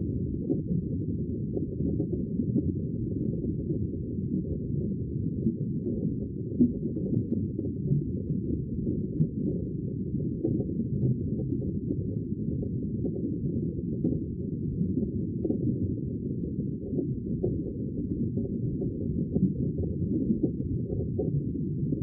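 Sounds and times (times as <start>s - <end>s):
rumble of moving sea water: 0.0s - 22.0s.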